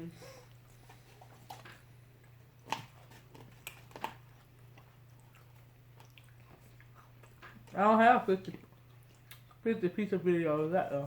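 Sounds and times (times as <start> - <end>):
low electrical hum: 0.0 - 11.0
person chewing: 0.4 - 7.9, 8.5 - 9.7.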